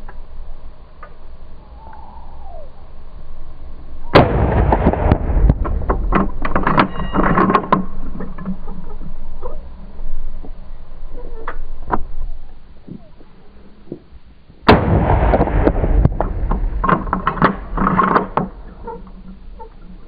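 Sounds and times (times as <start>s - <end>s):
gunshot: 4.2s - 6.2s, 14.7s - 18.6s
crackling clattering noise: 4.2s - 20.0s.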